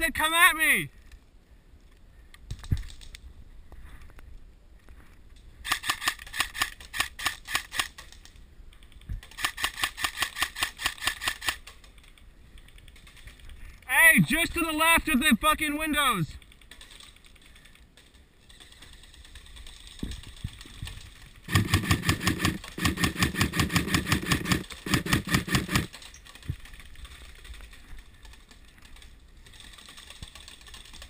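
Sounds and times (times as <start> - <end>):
airsoft gun firing bursts: 5.6 - 8.0, 9.3 - 11.6, 21.5 - 25.9.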